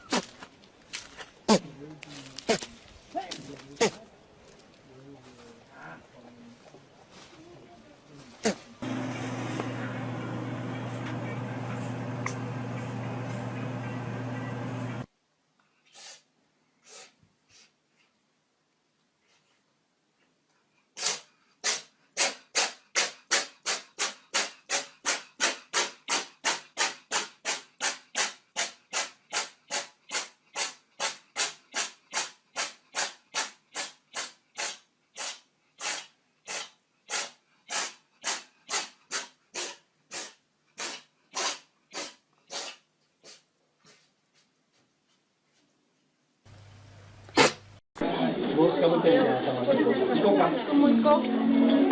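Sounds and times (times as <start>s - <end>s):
animal hissing bursts: 15.9s - 17.7s, 21.0s - 44.1s, 47.3s - 47.7s.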